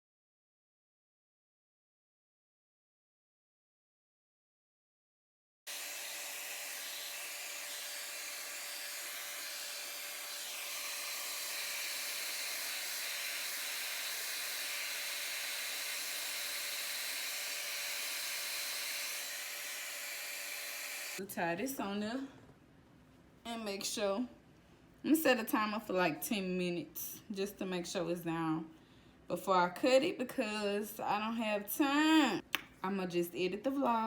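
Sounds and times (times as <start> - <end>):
hair dryer blowing: 5.7 - 21.2.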